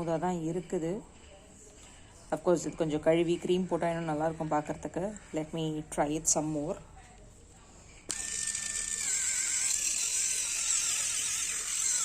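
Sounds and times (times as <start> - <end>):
electric callus remover buzzing: 8.1 - 12.0.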